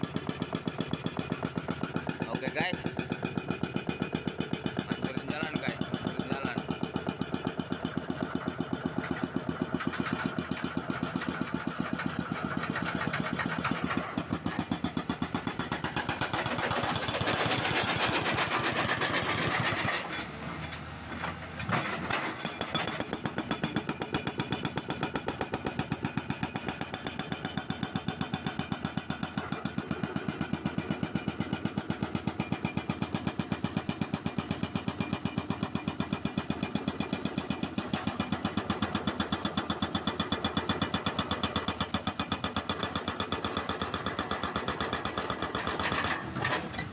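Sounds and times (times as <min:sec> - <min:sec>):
diesel engine running: 0:00.0 - 0:21.6
hydraulic breaker hammering concrete: 0:00.1 - 0:20.2, 0:21.8 - 0:46.5.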